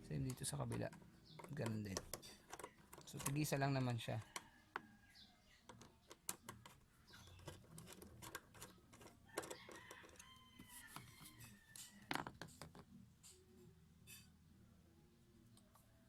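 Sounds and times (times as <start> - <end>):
tools clicking and knocking: 0.0 - 4.9, 5.6 - 13.4.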